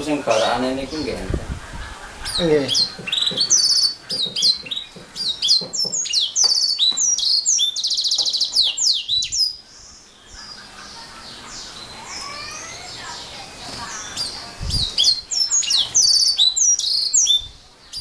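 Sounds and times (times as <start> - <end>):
canary singing: 0.0 - 18.0.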